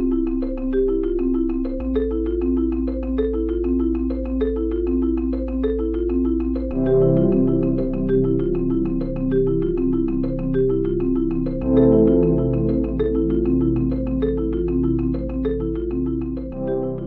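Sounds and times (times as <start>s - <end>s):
upbeat marimba tune: 0.0s - 17.0s
held bass: 10.2s - 17.0s.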